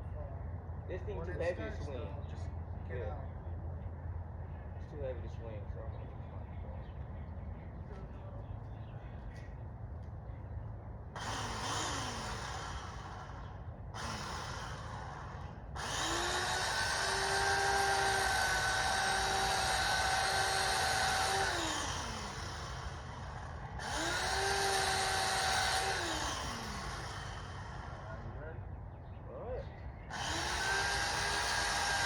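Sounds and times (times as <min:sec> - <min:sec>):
electric chainsaw cutting: 0:11.2 - 0:28.4, 0:30.1 - 0:32.0.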